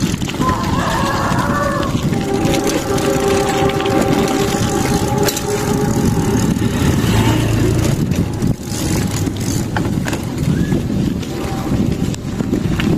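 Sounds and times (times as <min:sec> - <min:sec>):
road noise: 0:00.0 - 0:12.9
vehicle engine rumble: 0:00.0 - 0:12.9
train air horn chord: 0:01.1 - 0:08.6.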